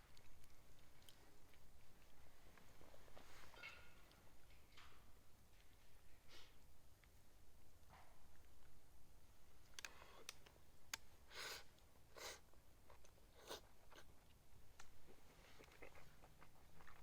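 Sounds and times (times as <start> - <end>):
person chewing: 12.2 - 14.4, 15.1 - 17.0
crunching mouth sounds: 12.2 - 17.0.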